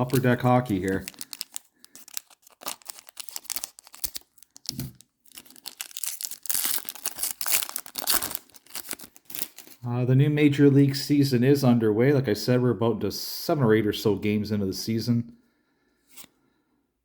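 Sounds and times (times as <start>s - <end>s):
wrapper crinkling and tearing: 0.0s - 9.8s.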